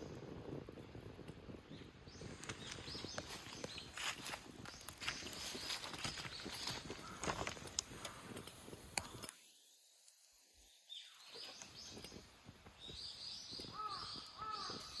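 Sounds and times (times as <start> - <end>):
small birds chirping: 1.1 - 15.0
crackles and snaps: 2.2 - 15.0
crow cawing: 13.7 - 15.0.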